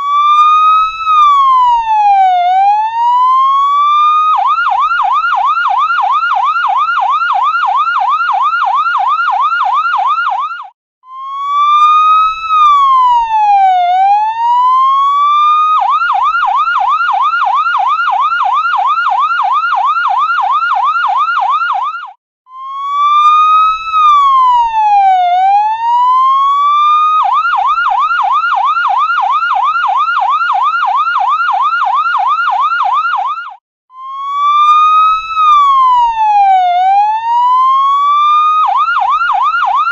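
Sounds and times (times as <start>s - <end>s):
ambulance siren yelp and wail: 0.0s - 39.9s.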